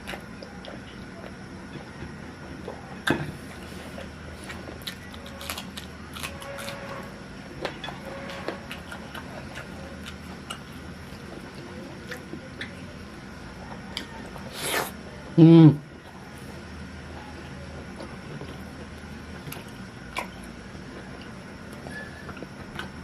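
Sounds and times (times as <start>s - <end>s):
steady low hum: 0.0s - 23.0s
chewing clicks and smacks: 8.6s - 12.8s, 18.0s - 23.0s.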